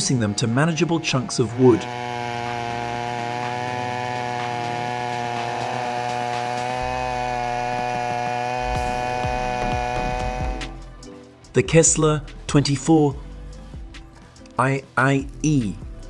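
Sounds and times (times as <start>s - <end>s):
chainsaw running at high revs: 0.0s - 11.1s.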